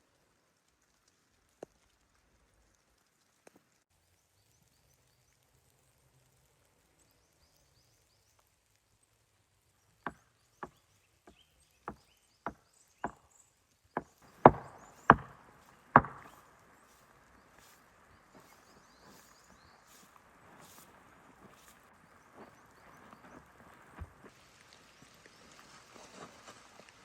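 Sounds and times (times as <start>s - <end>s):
wood being chopped: 14.0s - 16.4s.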